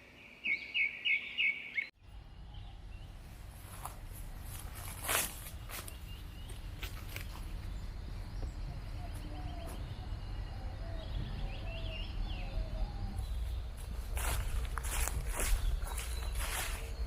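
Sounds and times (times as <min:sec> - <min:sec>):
bird chirps and trills: 0:00.0 - 0:03.2, 0:05.5 - 0:17.0
footsteps on woodland floor: 0:03.6 - 0:09.9, 0:13.2 - 0:17.0.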